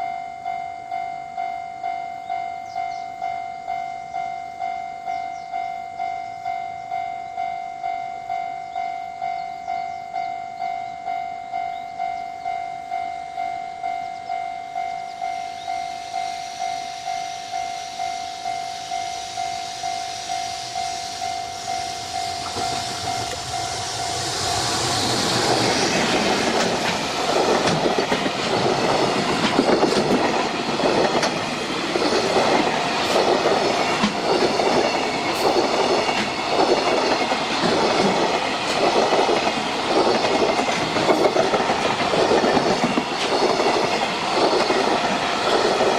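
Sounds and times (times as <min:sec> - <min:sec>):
train wheels clattering over rail joints: 0:22.3 - 0:45.9.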